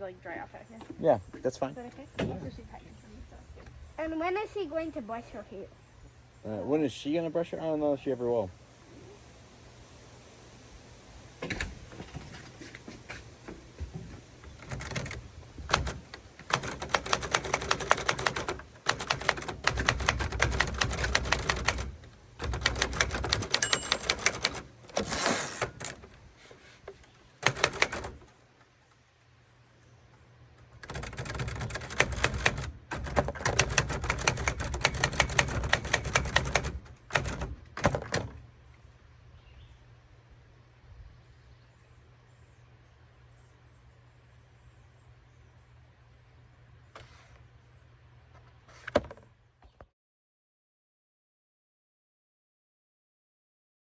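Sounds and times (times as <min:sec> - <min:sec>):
typewriter keys being struck: 0:14.5 - 0:26.1, 0:27.4 - 0:29.1, 0:30.6 - 0:38.3.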